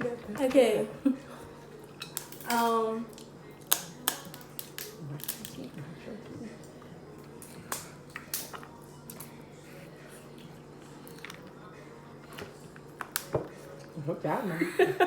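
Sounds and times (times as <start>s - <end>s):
seafood shells cracking: 2.0s - 5.6s.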